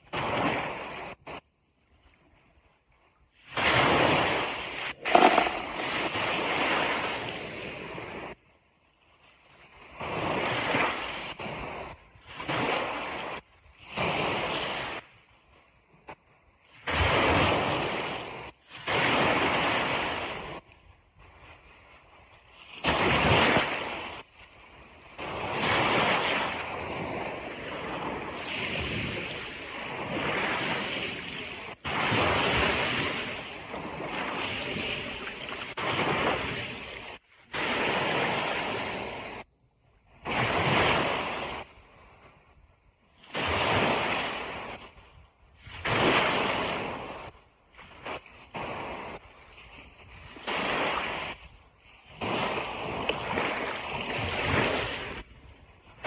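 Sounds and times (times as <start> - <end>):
ocean surf washing onto beach: 5.0 - 6.1.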